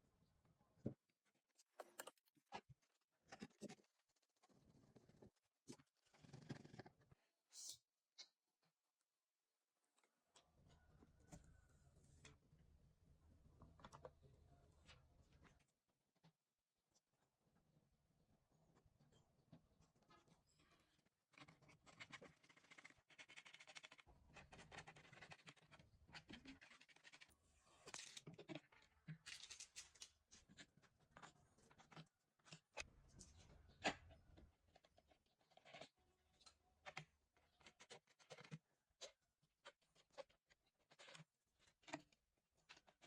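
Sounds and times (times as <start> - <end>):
computer parts handling noises: 29.1 - 30.2.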